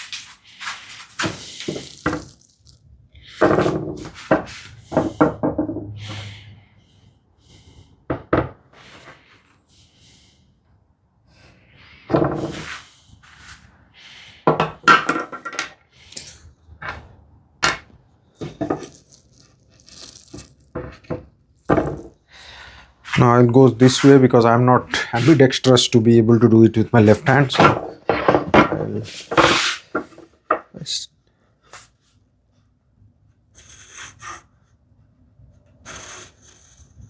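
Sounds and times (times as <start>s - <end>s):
tools scraping: 3.3s - 5.4s, 17.7s - 22.2s, 27.2s - 30.2s.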